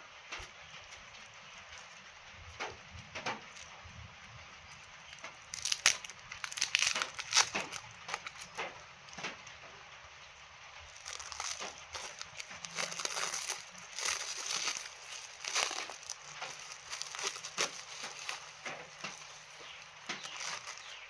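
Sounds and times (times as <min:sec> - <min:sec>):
packaging crinkling: 0:00.4 - 0:09.5, 0:10.7 - 0:21.0
packaging tearing: 0:04.7 - 0:09.4, 0:10.8 - 0:21.0.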